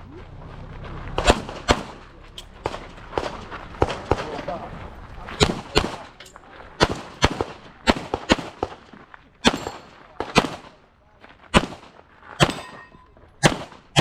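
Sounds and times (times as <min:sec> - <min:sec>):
handgun shots: 0:09.4 - 0:10.7, 0:11.5 - 0:14.0.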